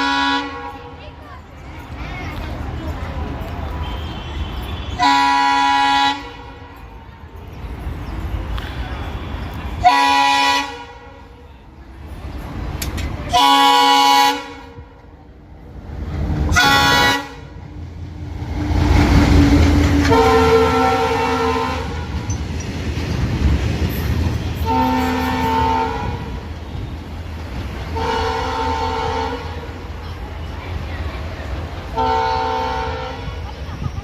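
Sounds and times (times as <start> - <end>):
locomotive horn blasts: 0.0 - 1.0, 3.8 - 6.8, 9.0 - 11.6, 13.3 - 15.0, 16.5 - 17.6, 18.8 - 22.3, 24.4 - 27.0, 27.9 - 29.8, 31.9 - 33.4
train rumble: 0.0 - 34.0.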